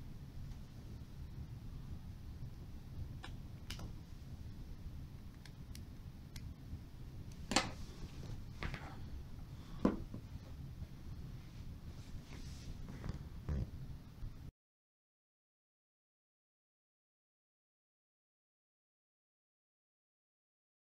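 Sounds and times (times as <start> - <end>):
steady low hum: 0.0 - 14.5.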